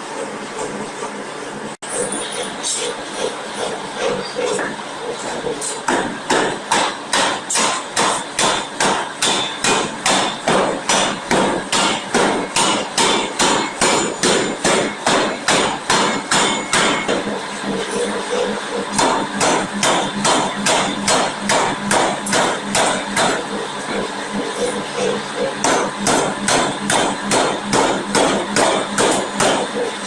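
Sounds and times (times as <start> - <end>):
steam forging hammer striking: 5.6 - 17.8, 18.4 - 24.0, 25.0 - 30.0.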